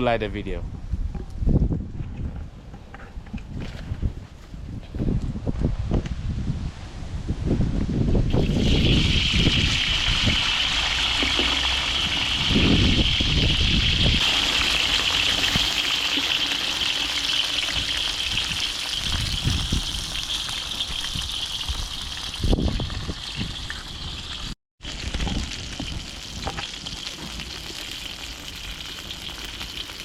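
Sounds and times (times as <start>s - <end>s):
wind on microphone: 0.4s - 14.6s, 17.7s - 26.1s
fish sizzling in hot oil: 8.3s - 30.0s.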